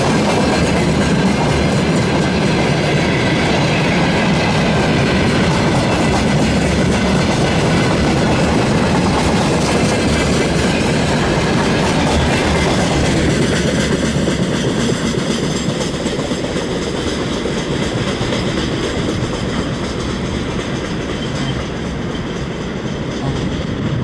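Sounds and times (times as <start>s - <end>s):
freight train wheels rumbling: 0.0s - 24.0s.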